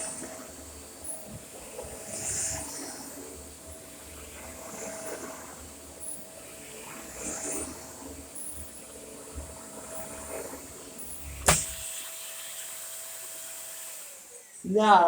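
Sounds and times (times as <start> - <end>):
vacuum cleaner whine: 0.0 - 15.0
sharp click: 11.4 - 11.8.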